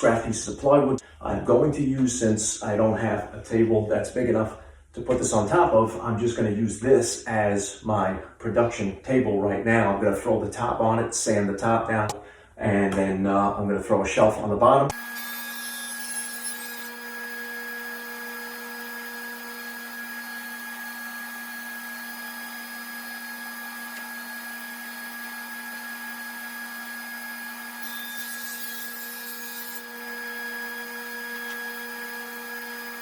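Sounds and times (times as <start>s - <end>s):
power tool motor humming: 15.0s - 33.0s.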